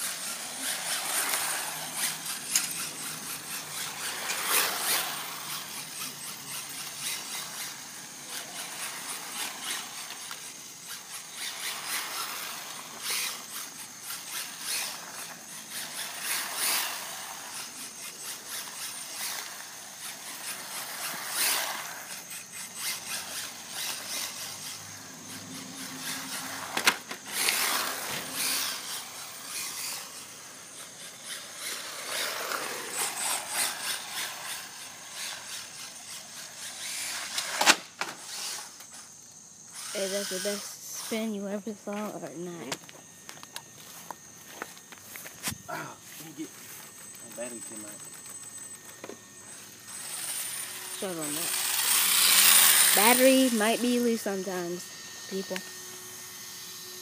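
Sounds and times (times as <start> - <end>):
tyres scrubbing over ground: 0.0 - 24.8, 25.4 - 38.8, 49.5 - 53.8
electric rc car running: 0.0 - 57.0.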